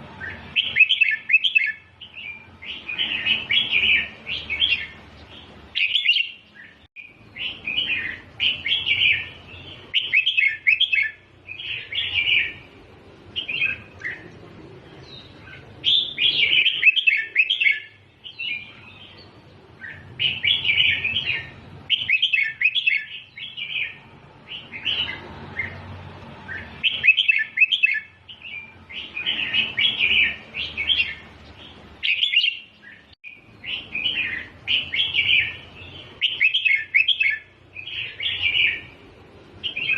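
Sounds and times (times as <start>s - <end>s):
bird warbling: 15.1s - 19.2s.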